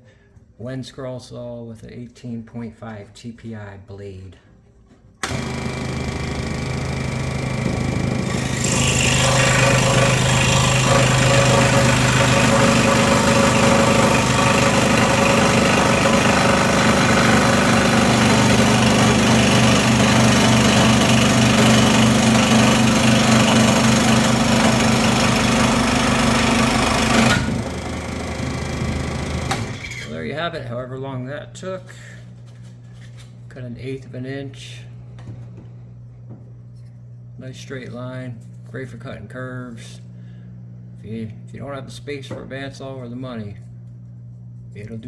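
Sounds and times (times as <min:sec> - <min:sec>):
scroll saw motor hum: 0:05.2 - 0:30.2.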